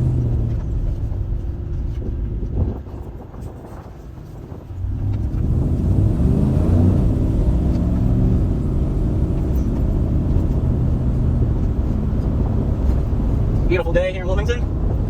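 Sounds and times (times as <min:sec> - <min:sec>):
truck engine running: 0:04.4 - 0:15.0.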